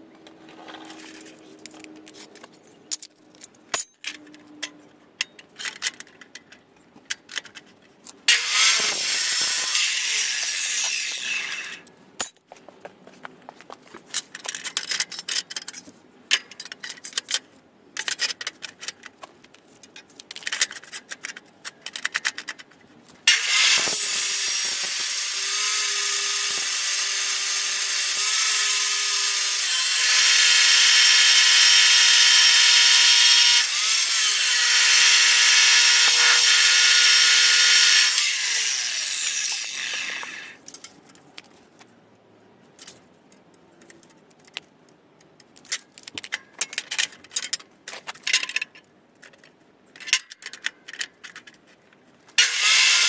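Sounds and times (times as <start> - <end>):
electric power saw cutting: 8.3 - 11.8, 23.3 - 40.6, 52.4 - 53.0.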